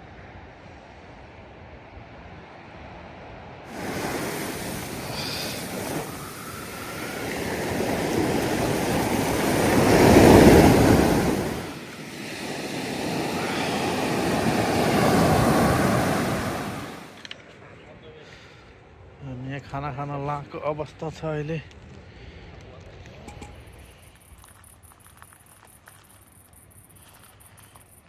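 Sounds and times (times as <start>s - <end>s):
sea waves washing onto beach: 3.7s - 17.2s.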